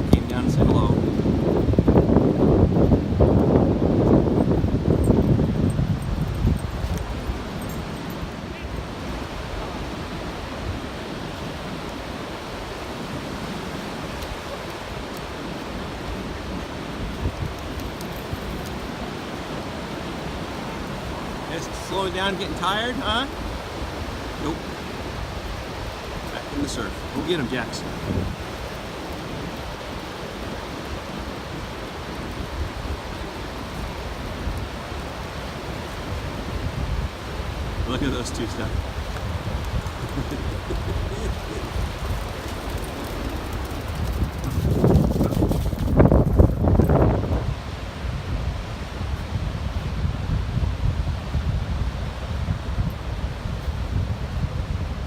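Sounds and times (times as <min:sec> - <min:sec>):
ocean surf washing on beach: 0:00.0 - 0:55.0
wind rumbling on microphone: 0:00.0 - 0:55.0
ocean surf breaking: 0:18.7 - 0:44.5.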